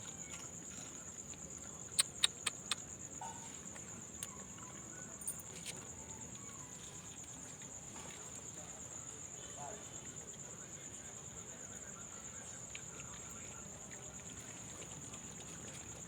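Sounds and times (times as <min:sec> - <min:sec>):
crickets trilling: 0:00.0 - 0:16.0
sharp clicks: 0:02.0 - 0:02.8.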